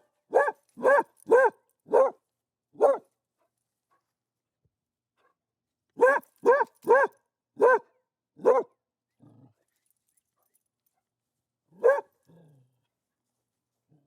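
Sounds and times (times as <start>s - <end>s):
dog barking: 0.3s - 2.2s, 2.8s - 3.1s, 6.0s - 8.8s, 11.8s - 12.2s.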